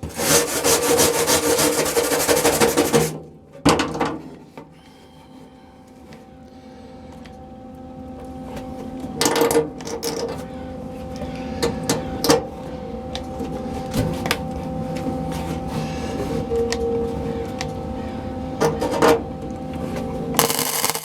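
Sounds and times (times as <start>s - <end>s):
welding machine hum: 14.2s - 21.0s
welding arc crackling: 20.4s - 21.0s.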